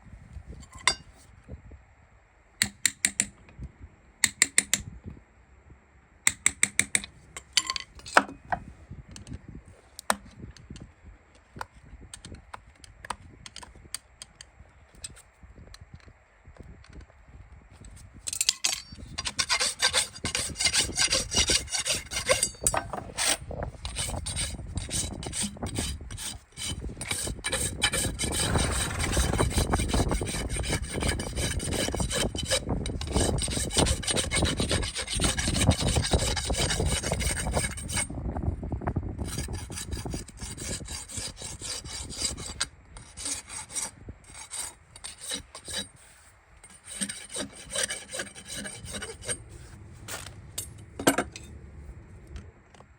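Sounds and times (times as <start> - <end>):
rasp filing hoof: 19.1 - 38.1, 39.2 - 50.2.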